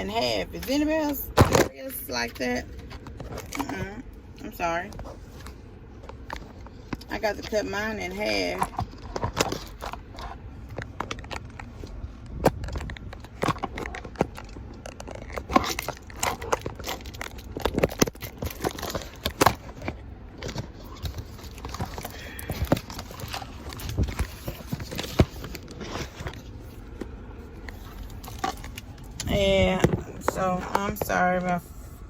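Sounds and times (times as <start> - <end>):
food wrapping crinkling: 8.7 - 29.3.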